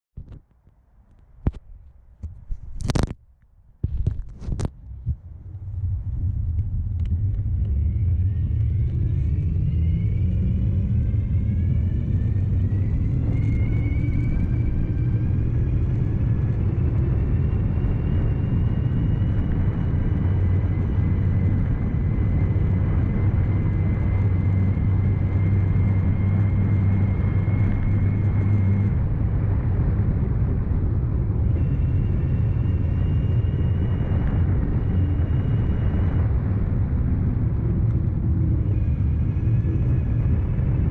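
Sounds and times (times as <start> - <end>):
low rumble: 0.2 - 40.9
higher-pitched whine: 5.4 - 40.9
electric bike motor whining: 6.7 - 40.9.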